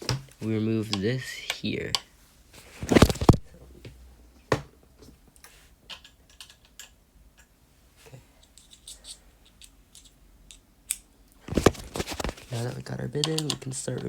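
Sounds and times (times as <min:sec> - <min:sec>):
screwdriver bit clicks and rattles: 0:08.4 - 0:11.0, 0:13.2 - 0:14.0.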